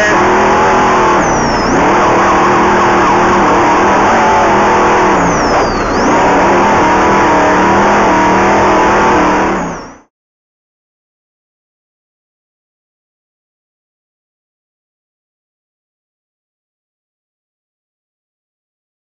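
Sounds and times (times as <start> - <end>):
race vehicle engine revving: 0.0 - 10.1.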